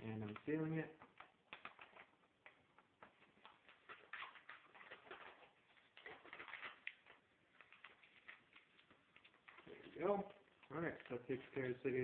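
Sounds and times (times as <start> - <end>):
paper envelope crinkling: 2.8 - 11.7.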